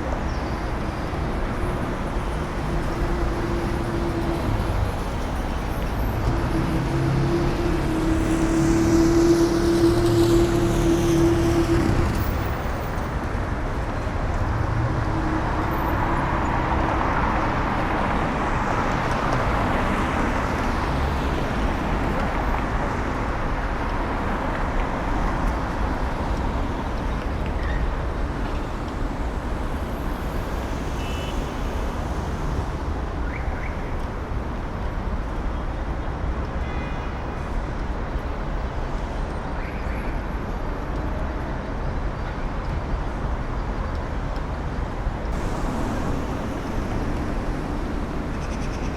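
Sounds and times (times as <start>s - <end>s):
road noise from passing cars: 0.0s - 48.9s
vehicle passing: 1.7s - 22.2s, 45.3s - 48.9s.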